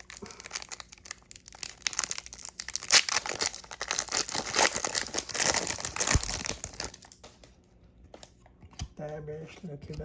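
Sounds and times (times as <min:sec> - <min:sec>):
plastic wrapper crinkling: 0:00.0 - 0:07.2
plastic wrapper ripping: 0:00.0 - 0:07.2.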